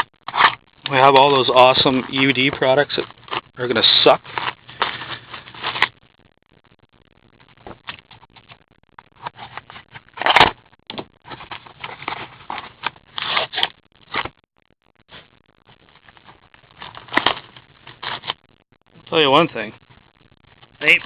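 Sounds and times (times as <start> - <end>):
cards and wrappers crinkling: 0.0 - 6.0, 7.4 - 14.4, 15.1 - 18.5.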